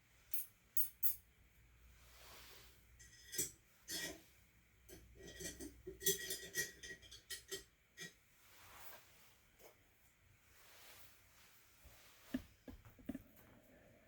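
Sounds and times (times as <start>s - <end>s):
utensils clinking and tapping: 0.3s - 1.2s, 3.0s - 4.2s, 4.9s - 8.2s.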